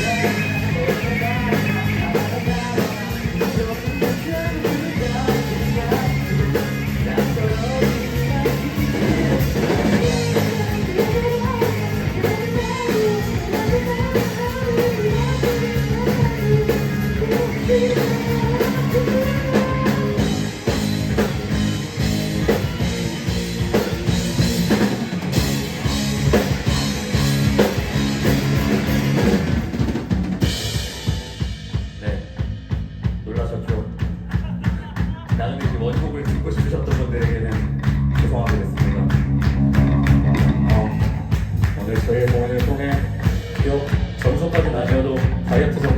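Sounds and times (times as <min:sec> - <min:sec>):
drum kit beat: 0:00.0 - 0:45.9
rock band playing live: 0:00.0 - 0:45.9.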